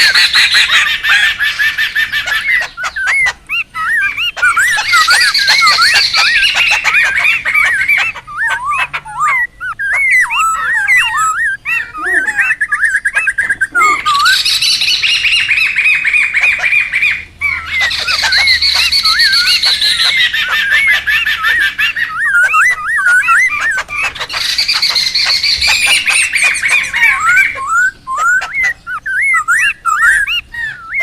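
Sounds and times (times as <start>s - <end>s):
bird trill: 0.0s - 31.0s
birds chattering harshly: 0.0s - 31.0s
bird whistled notes: 17.8s - 31.0s.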